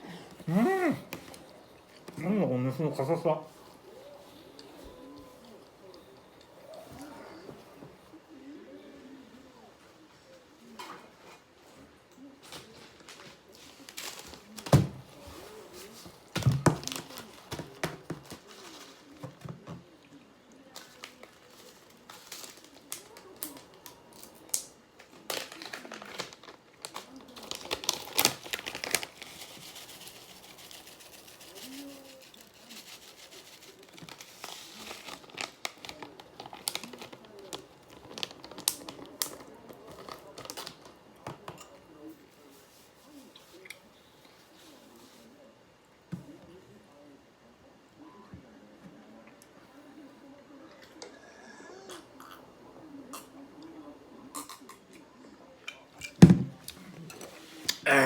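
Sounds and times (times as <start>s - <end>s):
plastic crinkling: 15.6s - 19.4s, 20.7s - 41.0s.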